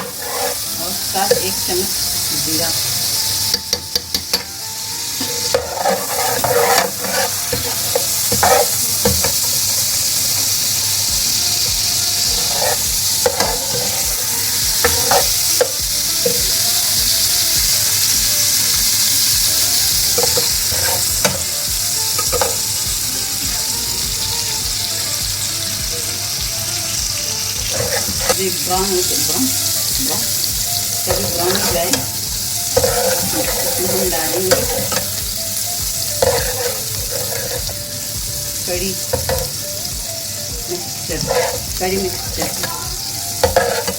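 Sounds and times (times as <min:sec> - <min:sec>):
spoon scraping a pan: 0:00.0 - 0:04.6, 0:05.2 - 0:10.6, 0:11.6 - 0:22.8, 0:27.5 - 0:35.2, 0:35.9 - 0:37.8, 0:38.6 - 0:39.9, 0:40.7 - 0:43.9
onion sizzling in hot oil: 0:00.0 - 0:43.9.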